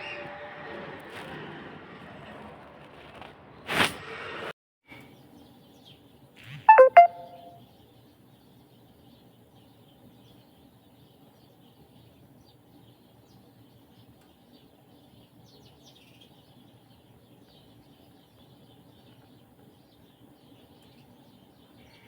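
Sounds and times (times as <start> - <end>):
small birds chirping: 5.2 - 22.0.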